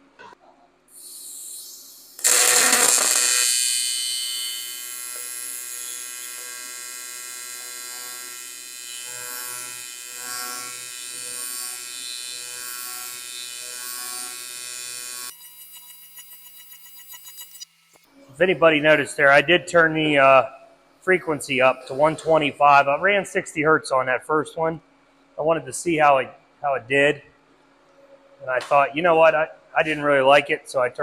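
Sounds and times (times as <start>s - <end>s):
welding arc buzzing: 1.0s - 18.1s.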